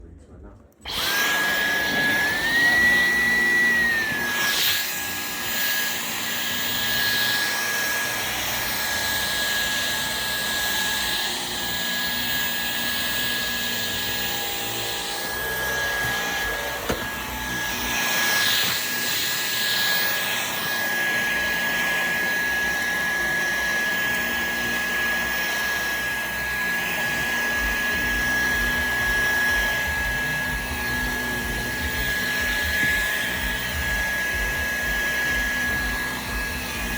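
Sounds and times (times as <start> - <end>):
vacuum cleaner running: 0.8 - 36.9.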